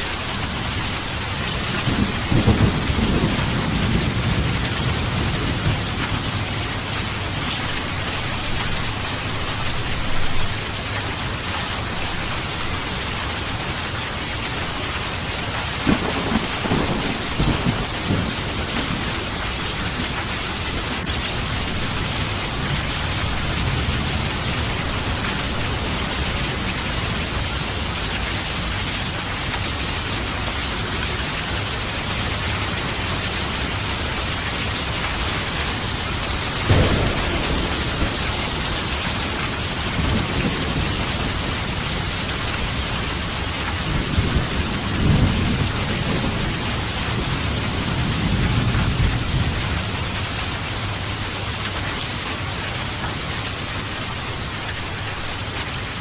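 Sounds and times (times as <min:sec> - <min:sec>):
thunder rumbling: 0:00.0 - 0:10.8, 0:14.6 - 0:28.8, 0:32.7 - 0:51.1
steady rain falling: 0:00.0 - 0:56.0.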